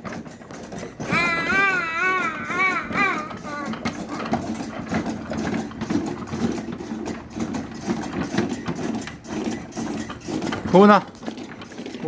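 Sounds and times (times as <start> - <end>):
ride-on toy creaking and squeaking: 0.1 - 12.0.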